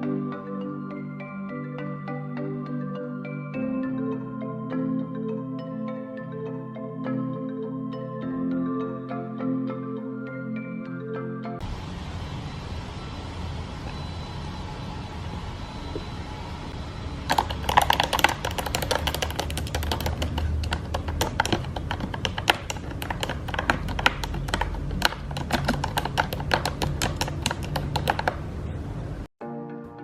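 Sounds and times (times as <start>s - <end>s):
music: 0.0s - 11.6s, 29.4s - 30.0s
low steady hum: 11.6s - 18.8s
computer keyboard typing: 17.3s - 28.5s.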